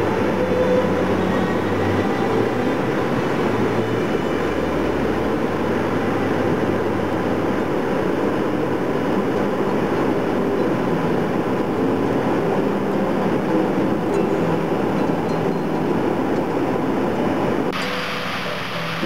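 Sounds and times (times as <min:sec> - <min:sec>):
waterfall rushing over rocks: 0:17.7 - 0:19.0.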